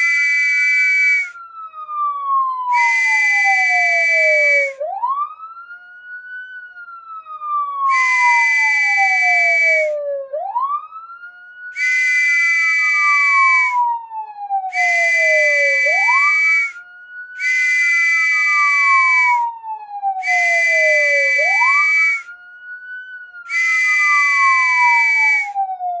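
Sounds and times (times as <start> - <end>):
police whistle blasts: 0.0 - 1.4, 2.7 - 4.8, 7.9 - 10.0, 11.8 - 13.8, 14.7 - 16.8, 17.4 - 19.5, 20.2 - 22.3, 23.5 - 25.6
police siren wailing: 0.0 - 26.0.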